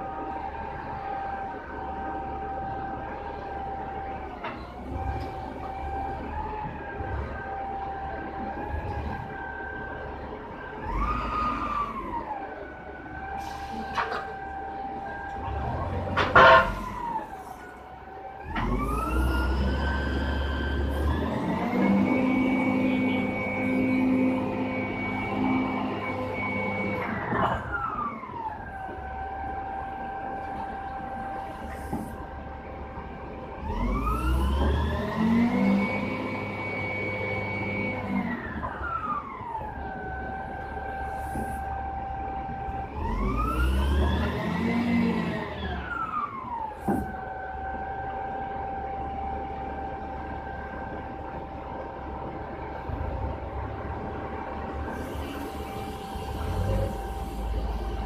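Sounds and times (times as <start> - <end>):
machine whine gliding in pitch: 18.5 - 31.5, 33.0 - 58.0.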